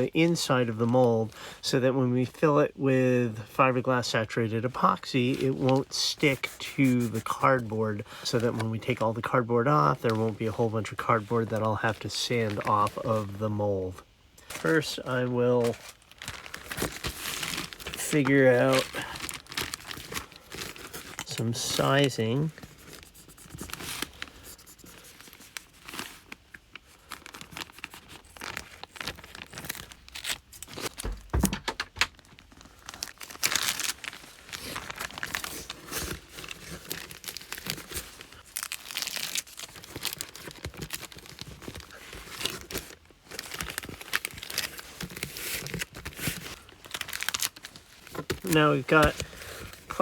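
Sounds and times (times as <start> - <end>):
plastic sheeting crinkling: 14.4 - 50.0
low thump: 31.0 - 32.1.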